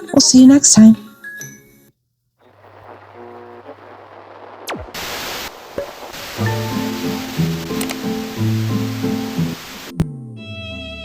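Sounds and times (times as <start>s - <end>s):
hiss: 5.0s - 9.9s
background music with held notes: 6.4s - 11.0s.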